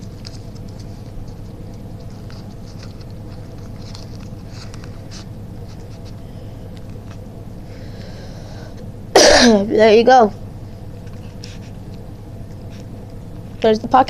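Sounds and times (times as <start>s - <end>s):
rustling and crinkling: 0.0s - 7.3s, 10.9s - 13.8s
steady low hum: 0.0s - 14.0s.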